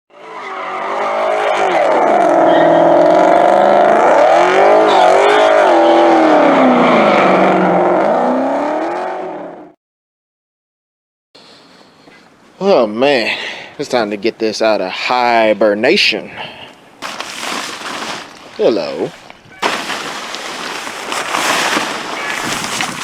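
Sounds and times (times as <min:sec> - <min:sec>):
car engine revving: 0:00.1 - 0:09.8.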